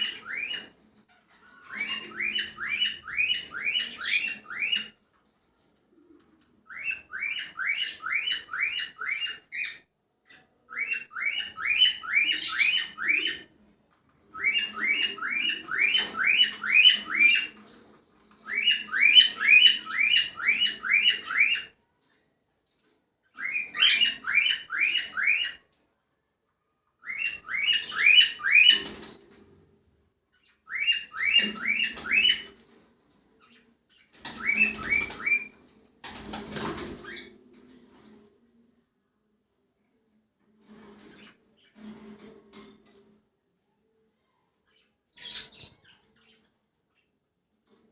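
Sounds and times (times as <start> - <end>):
cockatiel chirping: 1.6 - 4.9, 18.5 - 21.7, 27.0 - 28.9, 30.4 - 32.5, 34.4 - 35.5.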